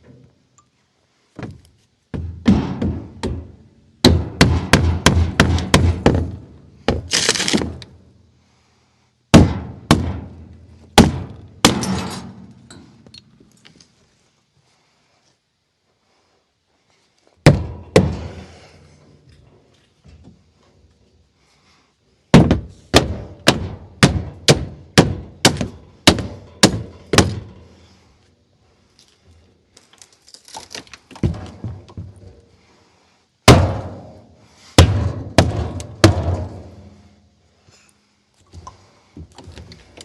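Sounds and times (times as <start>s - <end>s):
hammer blows on wooden crate: 2.2s - 7.1s, 17.4s - 18.6s, 22.3s - 27.5s, 33.5s - 37.0s.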